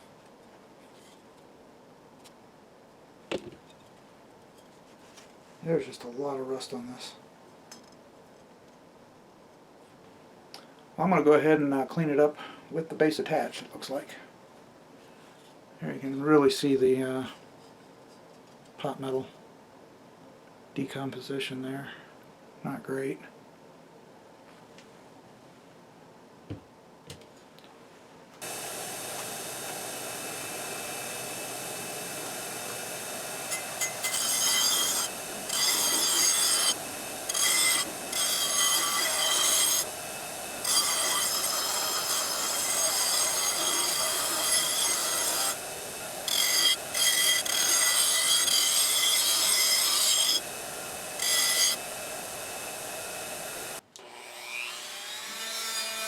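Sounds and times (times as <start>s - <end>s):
power tool grinding metal: 28.4s - 56.0s.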